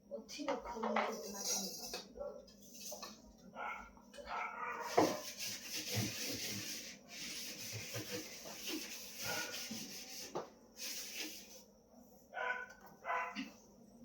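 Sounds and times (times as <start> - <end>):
scouring pad scrubbing surface: 4.8 - 11.6.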